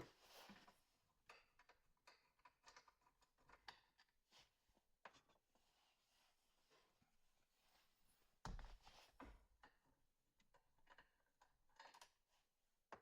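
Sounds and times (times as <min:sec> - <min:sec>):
small clicks and rustles: 0:00.3 - 0:05.6, 0:08.6 - 0:13.0.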